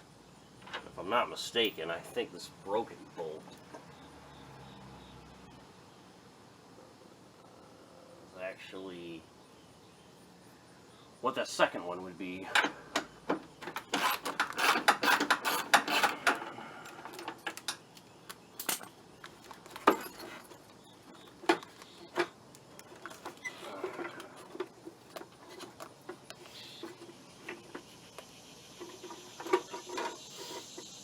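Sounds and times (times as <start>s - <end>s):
clicking and rattling of bolts: 12.5s - 20.6s.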